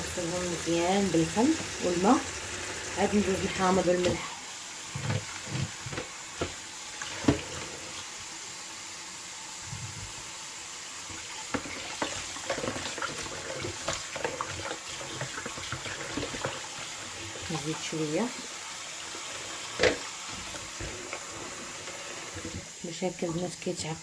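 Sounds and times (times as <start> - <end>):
water running in sink: 0.0 - 24.0
splashing while washing chicken: 1.1 - 8.4, 10.8 - 22.6.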